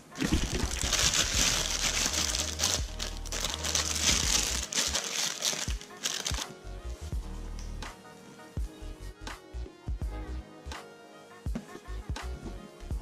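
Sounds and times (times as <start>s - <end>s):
plastic packaging crinkling: 0.0s - 6.5s
background music: 0.0s - 13.0s.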